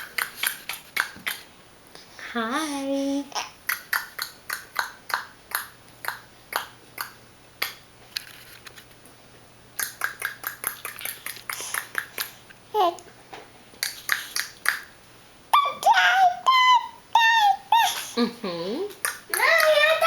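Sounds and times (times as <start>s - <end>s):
person clicking tongue: 9.8s - 12.4s, 13.8s - 14.8s.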